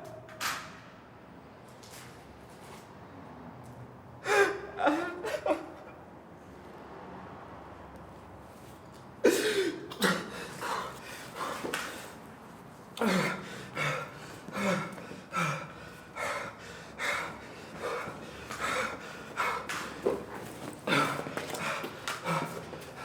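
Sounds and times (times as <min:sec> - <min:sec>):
person gasping: 0:13.0 - 0:20.2, 0:20.8 - 0:23.0.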